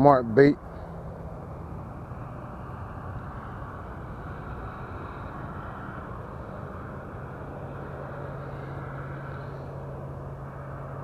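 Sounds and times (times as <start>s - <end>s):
low mechanical rumble: 0.0s - 11.0s
low steady hum: 0.0s - 11.0s.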